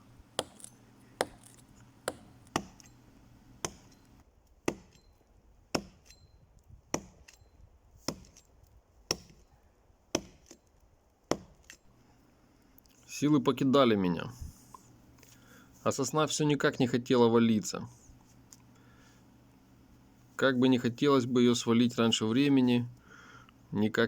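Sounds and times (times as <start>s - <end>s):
axe chopping wood: 0.4s - 3.0s, 3.6s - 5.0s, 5.7s - 6.2s, 6.9s - 7.4s, 8.0s - 8.4s, 9.1s - 9.4s, 10.1s - 10.7s, 11.3s - 11.8s.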